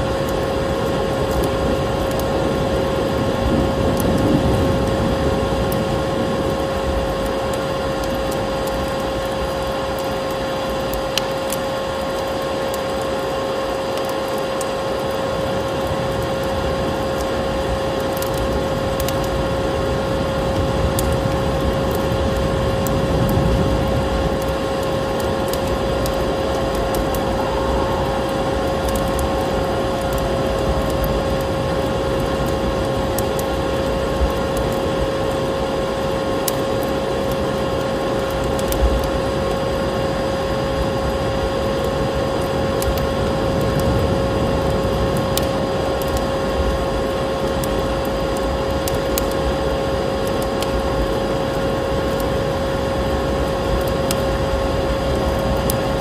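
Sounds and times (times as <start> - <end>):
vacuum cleaner running: 23.3 - 36.0
faint clicks: 24.4 - 32.6.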